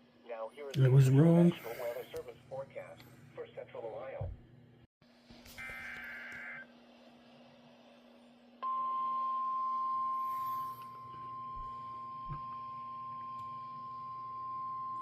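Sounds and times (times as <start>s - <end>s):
steady warning alarm tone: 8.6s - 15.0s.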